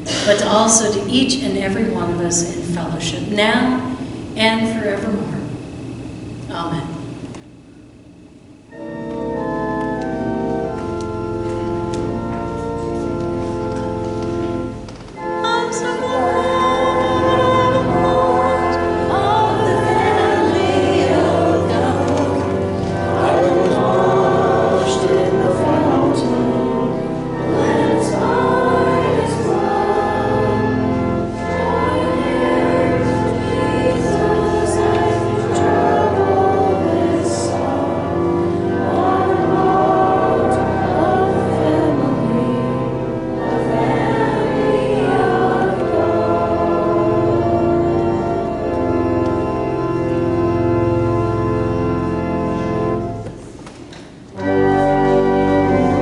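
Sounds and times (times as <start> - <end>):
sustained instrumental accompaniment: 8.6 - 53.4, 54.3 - 56.0
group singing a hymn: 15.2 - 53.2, 54.4 - 56.0.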